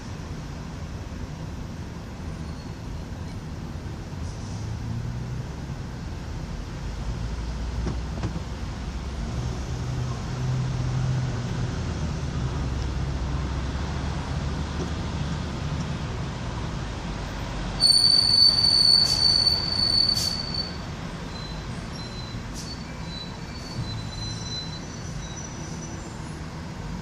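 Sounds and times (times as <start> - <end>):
subway train wheels squealing: 2.3 - 3.4, 17.7 - 26.5.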